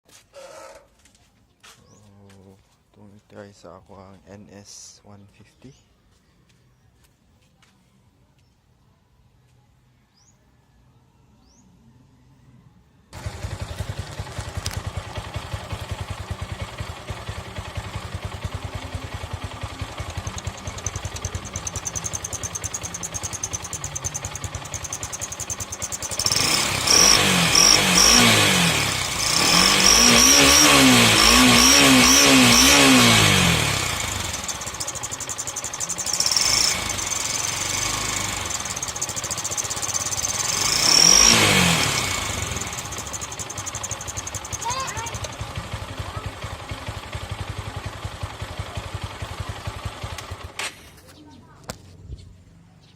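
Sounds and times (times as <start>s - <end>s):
motorcycle engine idling and revving: 13.1s - 52.9s
high exhaust whistle: 24.8s - 32.7s.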